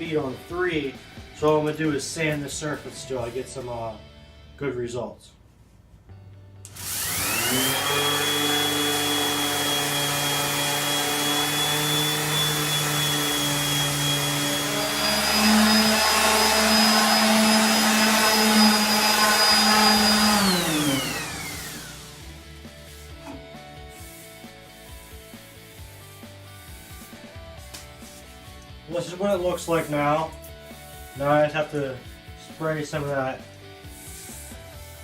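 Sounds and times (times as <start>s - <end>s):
electric sander whining: 6.7s - 23.4s.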